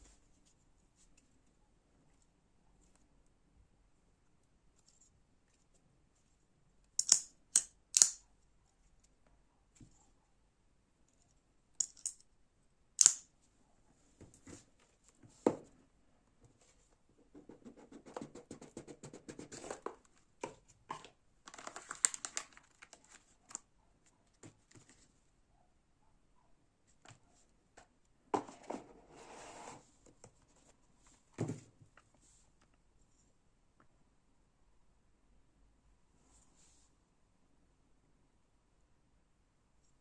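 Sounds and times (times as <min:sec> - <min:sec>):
folding knife clicking: 0:07.0 - 0:08.2, 0:11.8 - 0:12.2, 0:13.0 - 0:13.2.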